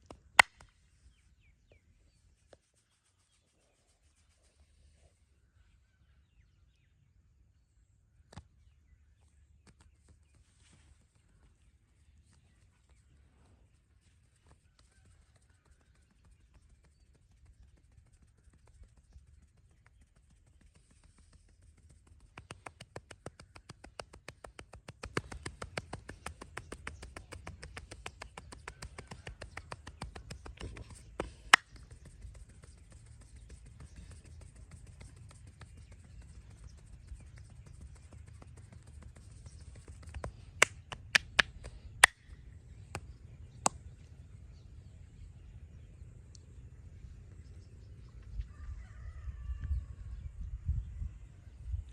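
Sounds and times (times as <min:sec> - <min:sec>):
hands tapping body rhythmically: 0:15.9 - 0:42.2.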